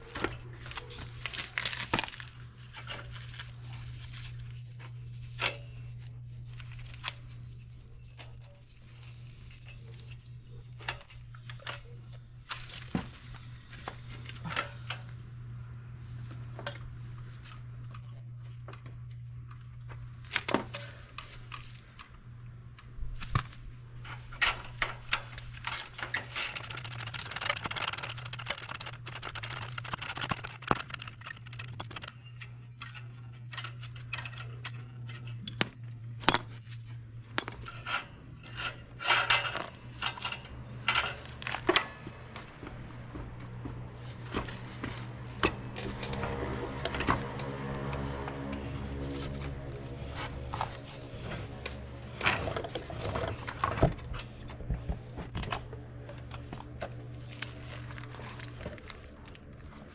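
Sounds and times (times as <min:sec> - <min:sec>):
metal tools clinking: 0:00.0 - 0:07.4, 0:20.3 - 0:59.9
low steady hum: 0:00.0 - 0:59.9.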